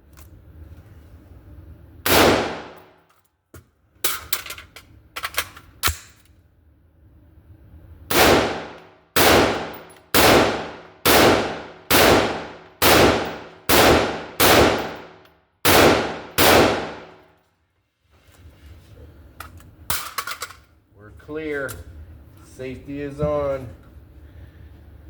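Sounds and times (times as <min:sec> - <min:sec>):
rifle shots with echo: 0:02.1 - 0:02.9, 0:08.1 - 0:17.2.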